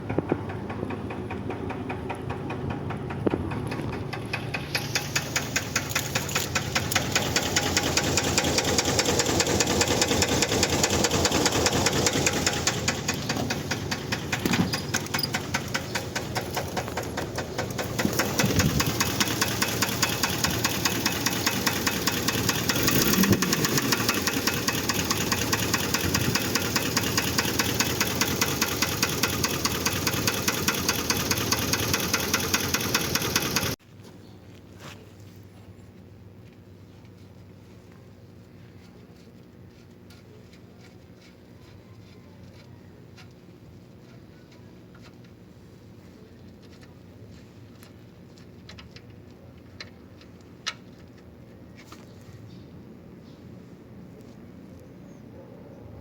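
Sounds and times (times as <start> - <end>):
engine running with metallic knock: 0.0 - 33.8.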